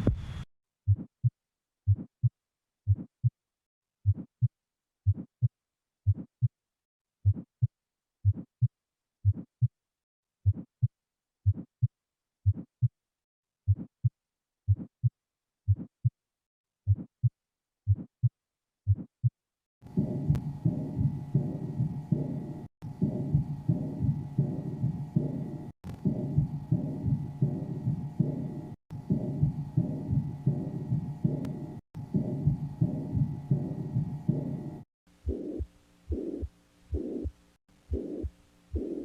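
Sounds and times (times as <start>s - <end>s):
heartbeat thuds through stethoscope: 0.0s - 2.3s, 4.0s - 5.5s, 6.1s - 6.6s, 7.2s - 9.8s, 10.4s - 13.0s, 13.7s - 15.1s, 15.7s - 16.2s, 19.8s - 39.0s.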